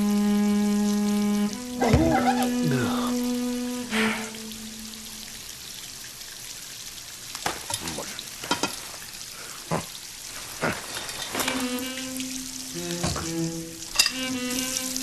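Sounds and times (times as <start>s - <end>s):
water spraying hiss: 0.0s - 5.7s, 7.6s - 15.0s
knocks and clunks: 1.8s - 2.3s.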